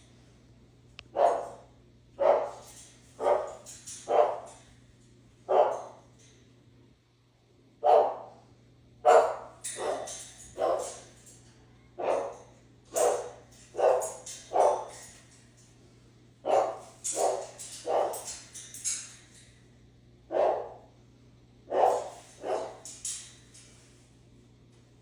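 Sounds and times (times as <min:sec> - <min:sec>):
parrot barking like a dog: 0:01.1 - 0:04.5, 0:05.5 - 0:06.0, 0:07.8 - 0:08.4, 0:09.1 - 0:11.0, 0:12.0 - 0:15.0, 0:16.4 - 0:18.5, 0:20.3 - 0:20.9, 0:21.7 - 0:22.9.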